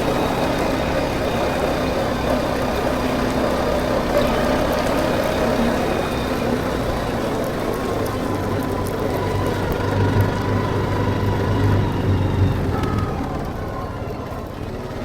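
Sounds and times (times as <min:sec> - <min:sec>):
atv engine running steadily: 0:00.0 - 0:15.0.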